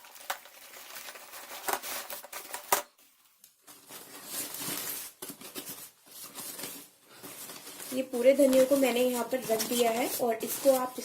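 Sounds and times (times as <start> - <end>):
paper bag rustling: 3.6 - 11.0.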